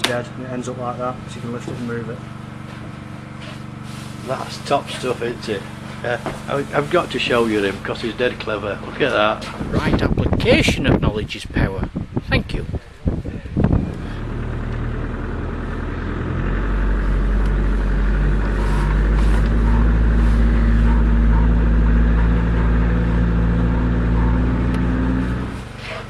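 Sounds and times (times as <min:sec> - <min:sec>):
engine running and revving: 0:13.6 - 0:26.0.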